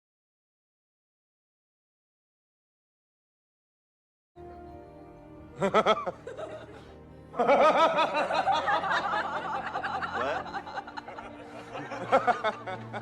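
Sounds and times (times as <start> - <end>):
background music: 4.4 - 13.0
people laughing: 5.6 - 13.0.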